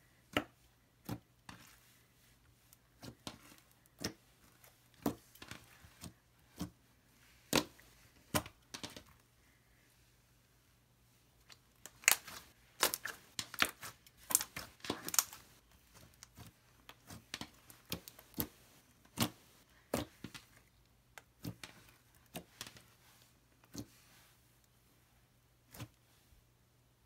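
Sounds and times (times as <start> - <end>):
slime squished by hand: 11.8 - 15.4.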